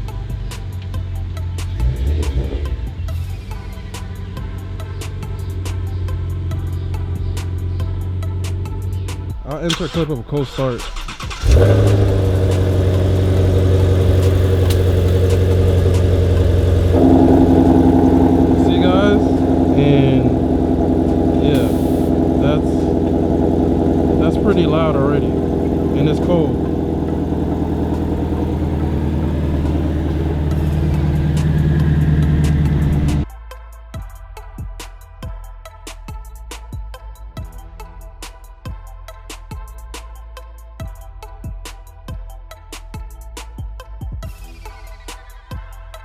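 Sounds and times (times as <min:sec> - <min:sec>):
car engine starting and idling: 0:00.0 - 0:33.3
music: 0:00.0 - 0:46.0.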